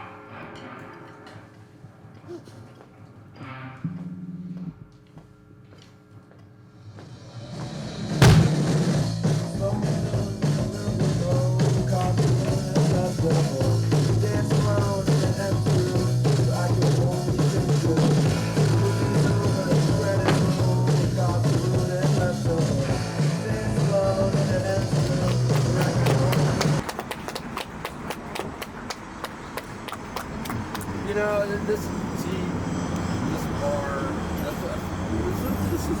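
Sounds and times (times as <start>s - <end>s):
moving bass line: 8.2s - 8.7s.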